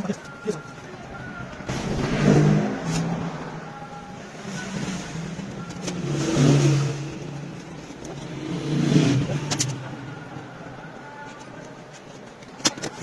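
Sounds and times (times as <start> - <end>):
car engine revving: 1.6 - 10.2.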